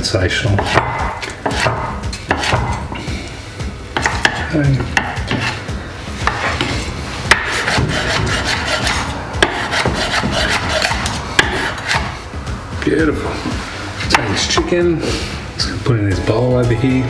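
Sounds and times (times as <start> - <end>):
knife scraping on chopping board: 0.4 - 3.4, 4.0 - 12.3
knife blade knocking on board: 0.6 - 3.0, 4.0 - 5.6, 6.2 - 12.2.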